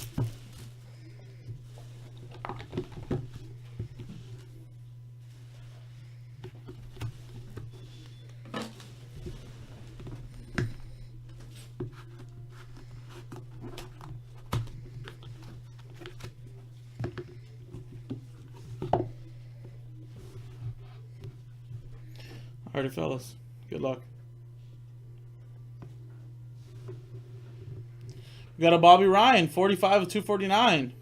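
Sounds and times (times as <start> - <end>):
cards and packaging rustling: 0.0 - 4.5
steady low hum: 0.0 - 31.0.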